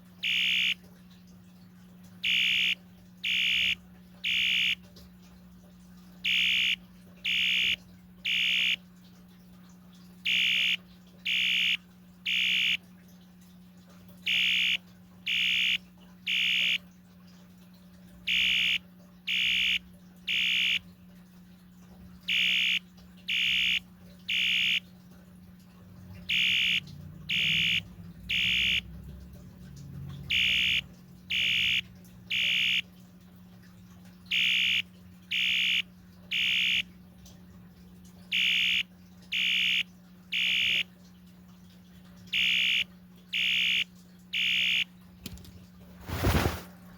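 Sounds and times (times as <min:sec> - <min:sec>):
fire alarm horn blasts: 0:00.2 - 0:00.9, 0:02.2 - 0:04.8, 0:06.2 - 0:08.9, 0:10.2 - 0:12.9, 0:14.3 - 0:16.8, 0:18.3 - 0:20.8, 0:22.3 - 0:24.9, 0:26.3 - 0:28.9, 0:30.3 - 0:32.9, 0:34.3 - 0:36.9, 0:38.3 - 0:40.9, 0:42.3 - 0:44.9.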